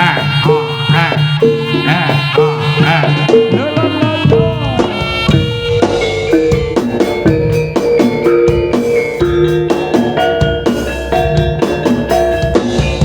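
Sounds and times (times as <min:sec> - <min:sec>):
drumming: 0:00.0 - 0:13.0
gamelan music: 0:04.5 - 0:13.0.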